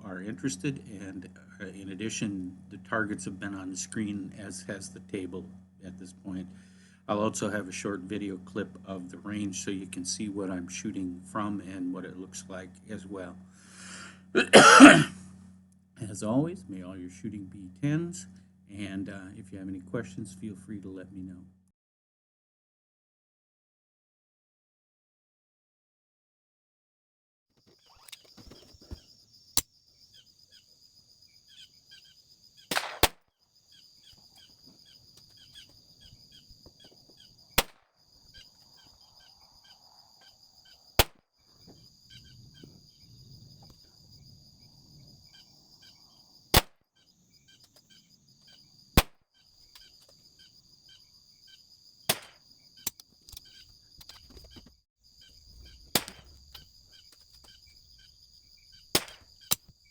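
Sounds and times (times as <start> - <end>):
insect buzz with ticking: 0.1 - 20.0, 27.6 - 59.9
pistol shots: 32.7 - 33.2, 37.6 - 37.8, 52.1 - 52.4, 55.9 - 56.4, 59.0 - 59.3.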